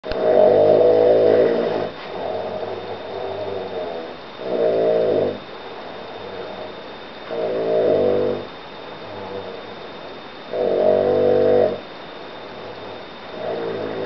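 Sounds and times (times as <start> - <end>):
man snoring: 0.1 - 5.4, 7.3 - 8.5, 10.5 - 11.8, 13.4 - 14.0.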